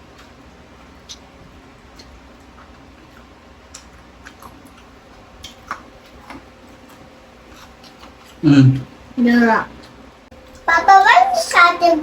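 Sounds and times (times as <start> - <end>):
low background hum: 0.0 - 12.0
chewing and utensil clicks: 1.9 - 8.9.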